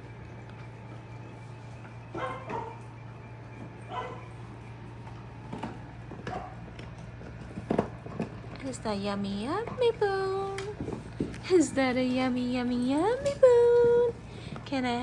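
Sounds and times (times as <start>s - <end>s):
dog yelping: 2.1s - 2.8s, 3.8s - 4.3s, 6.2s - 6.6s.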